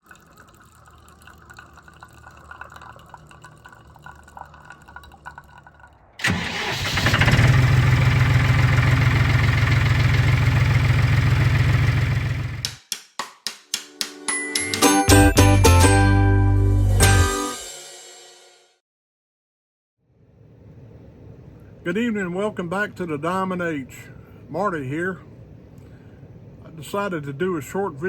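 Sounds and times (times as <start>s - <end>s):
diesel tractor engine running: 6.2s - 12.7s.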